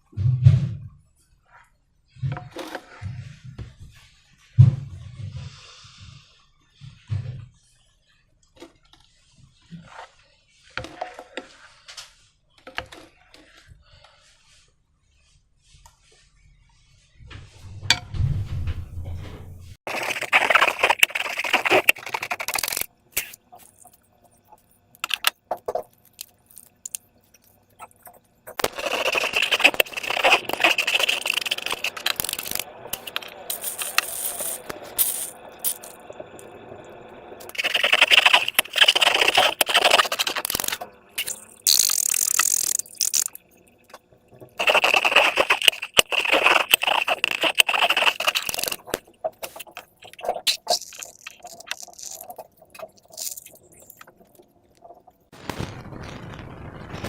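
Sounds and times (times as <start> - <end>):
slime and balloons squishing: 19.8 - 24.0, 25.0 - 36.0, 37.5 - 43.4, 44.4 - 57.0.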